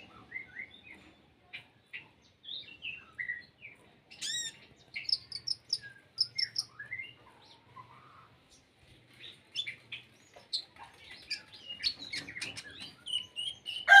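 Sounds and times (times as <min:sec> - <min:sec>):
songbird chirping and whistling: 0:04.2 - 0:07.2.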